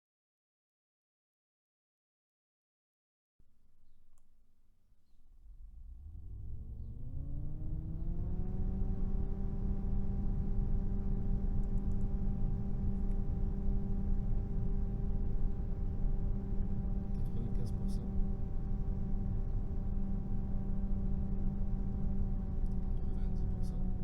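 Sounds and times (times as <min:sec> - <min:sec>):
computer fan whirring: 0:05.4 - 0:24.0.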